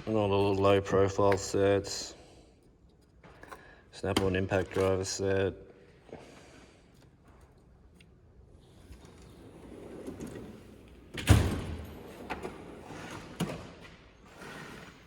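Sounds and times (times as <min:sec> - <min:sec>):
drawer rolling on slides: 0:08.6 - 0:15.0
metal drawer banging shut: 0:11.1 - 0:12.0.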